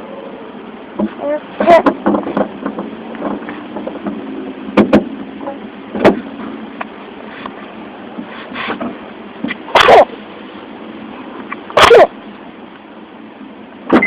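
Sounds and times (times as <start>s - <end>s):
puppy sneezing: 9.7s - 10.2s, 11.8s - 12.2s.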